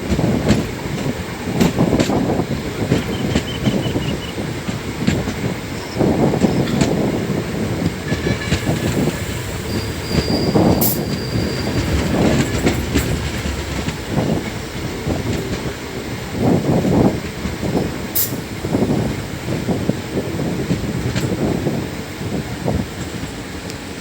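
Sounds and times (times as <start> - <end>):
train wheels rumbling on track: 0.0 - 24.0
wheels squealing: 8.1 - 14.4.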